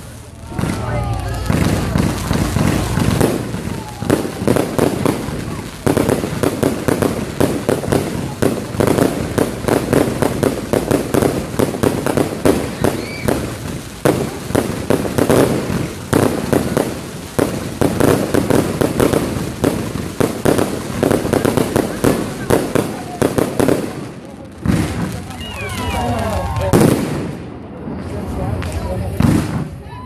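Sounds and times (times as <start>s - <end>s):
fireworks bangs and crackling: 0.0s - 30.0s.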